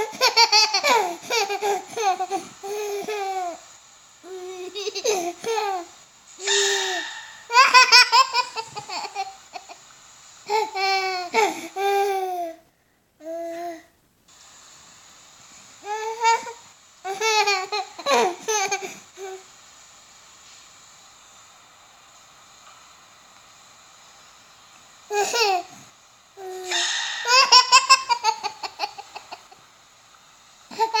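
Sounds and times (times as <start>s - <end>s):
baby laughing: 0.0s - 3.6s, 4.3s - 9.8s, 15.9s - 19.4s, 25.1s - 25.7s, 26.4s - 29.6s, 30.7s - 31.0s
baby calling out: 6.4s - 8.0s.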